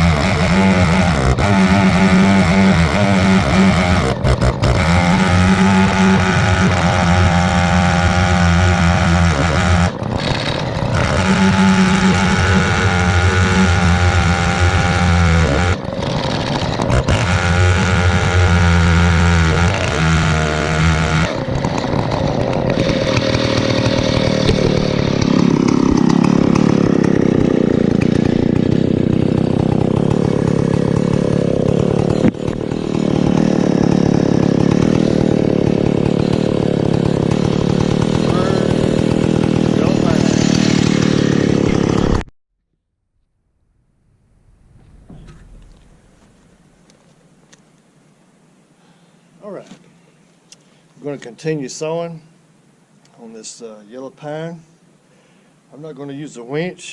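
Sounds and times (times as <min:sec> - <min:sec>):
chainsaw ripping log: 0:00.0 - 0:42.3.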